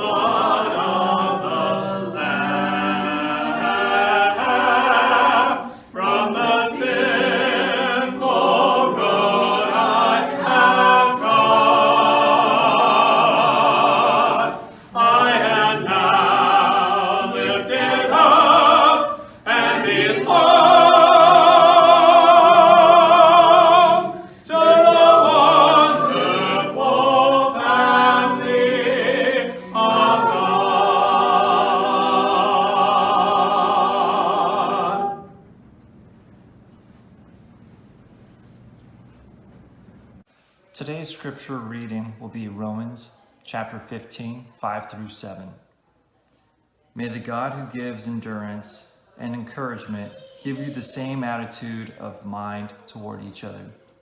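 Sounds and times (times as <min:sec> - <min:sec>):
voices singing a hymn: 0:00.0 - 0:35.5.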